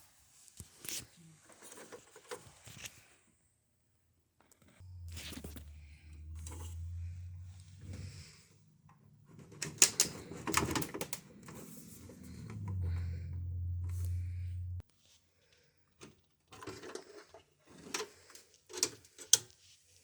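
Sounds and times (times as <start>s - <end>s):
low steady hum: 4.8s - 9.6s, 11.2s - 14.8s
small hard parts clicking and rattling: 8.9s - 12.8s.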